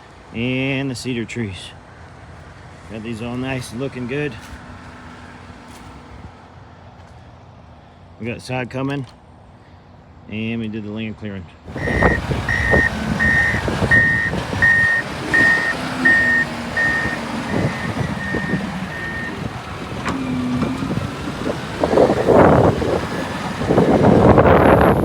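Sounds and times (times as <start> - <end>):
vehicle backup alarm beeping: 11.7 - 25.0
vehicle engine running: 11.7 - 25.0.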